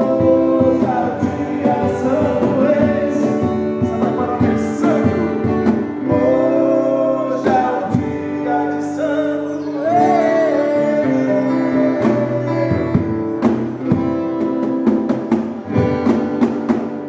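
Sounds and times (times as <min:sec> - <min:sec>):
guitar: 0:00.0 - 0:17.0
pop rock song: 0:00.0 - 0:17.0
person singing long held notes: 0:06.1 - 0:13.4.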